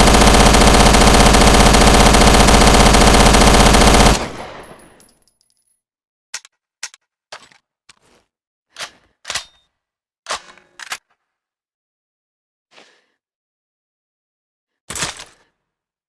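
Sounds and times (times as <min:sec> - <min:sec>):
submachine gun automatic burst: 0:00.0 - 0:04.8.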